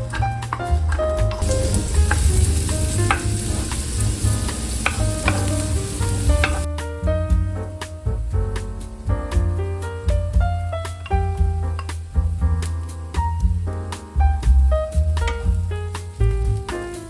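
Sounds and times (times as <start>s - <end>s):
food sizzling in a frying pan: 0.1s - 6.7s, 10.8s - 14.0s, 14.9s - 17.0s.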